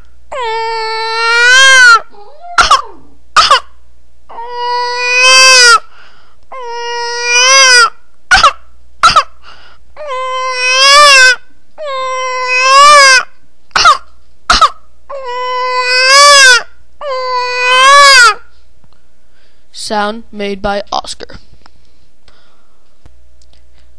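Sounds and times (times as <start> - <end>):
person imitating crying baby: 0.3 - 3.6, 4.3 - 5.9, 6.5 - 9.3, 10.0 - 14.0, 15.1 - 18.4
sharp gasping breaths: 5.9 - 6.4, 9.4 - 9.9, 22.2 - 22.9.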